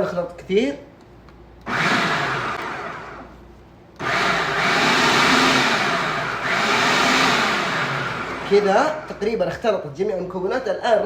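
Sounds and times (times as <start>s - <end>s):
food processor motor pulsing: 1.6s - 3.3s, 4.0s - 9.2s.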